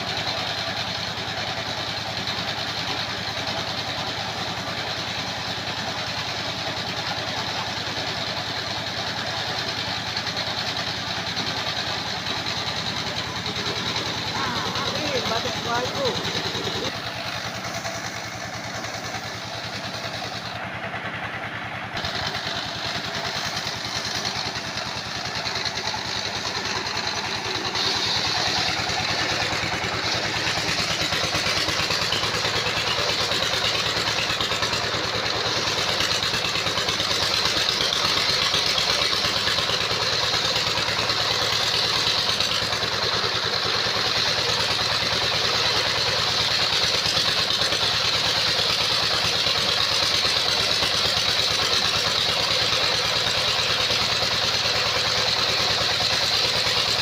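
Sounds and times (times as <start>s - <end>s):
sawmill engine running: 0.0s - 57.0s.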